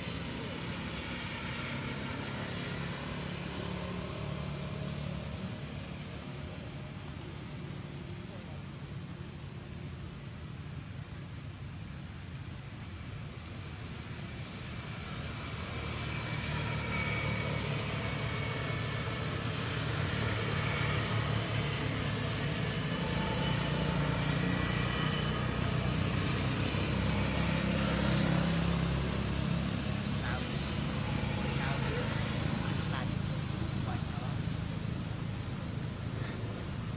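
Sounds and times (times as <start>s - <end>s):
vehicle engine rumble: 0.0s - 36.9s.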